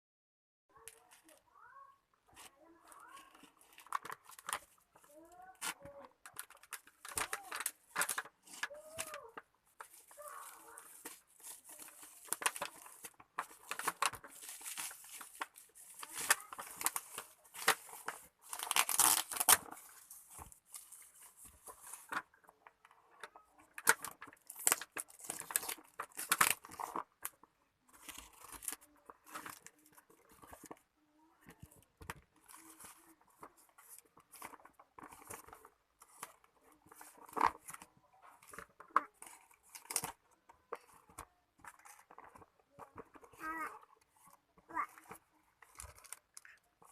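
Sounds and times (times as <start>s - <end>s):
packaging tearing and crinkling: 5.5s - 21.1s, 23.7s - 27.3s, 38.4s - 40.2s, 44.8s - 46.6s.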